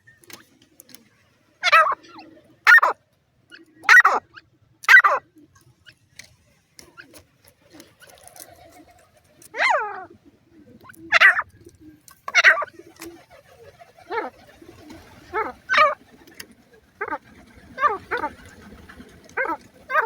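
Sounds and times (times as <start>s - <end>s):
bird chicks calling: 1.6s - 3.0s, 3.8s - 5.2s, 9.6s - 10.1s, 10.8s - 11.5s, 12.2s - 20.0s.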